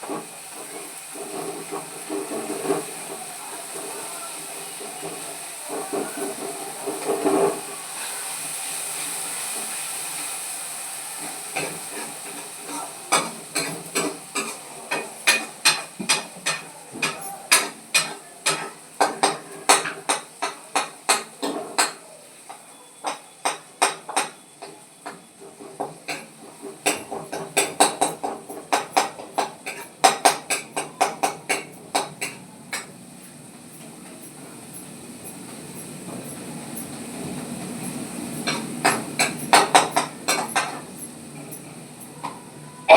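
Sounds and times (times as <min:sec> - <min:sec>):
food sizzling in a hot pan: 0:00.0 - 0:42.9.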